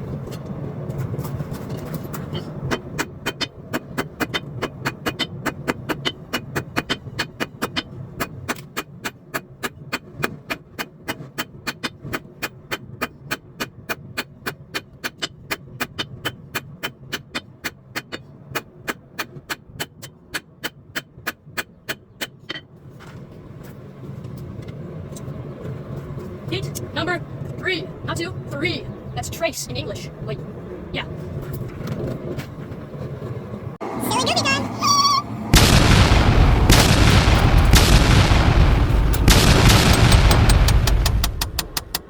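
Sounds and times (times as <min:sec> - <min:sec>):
low hum: 0:35.0 - 0:42.0
hammer blows on hot steel: 0:35.6 - 0:42.0.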